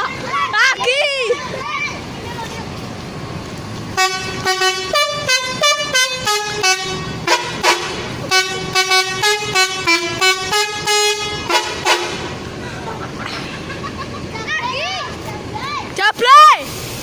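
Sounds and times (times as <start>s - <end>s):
bus horn playing short toots: 4.0s - 12.3s.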